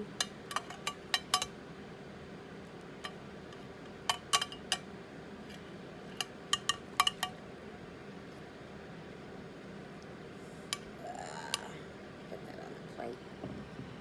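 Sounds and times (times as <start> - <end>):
serving utensil clinking on dish: 0.2 - 1.5, 6.5 - 7.3.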